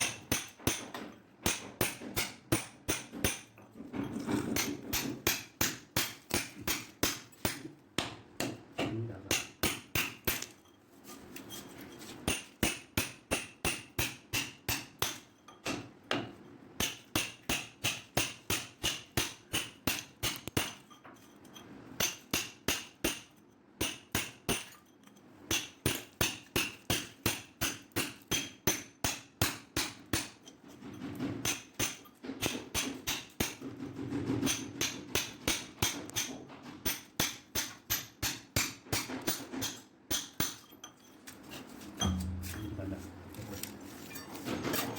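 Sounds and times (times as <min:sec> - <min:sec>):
hammer blows: 0:42.0 - 0:43.4.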